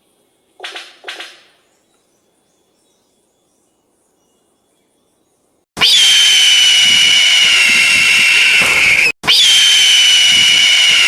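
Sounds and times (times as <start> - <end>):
bird screeching: 5.8 - 11.0.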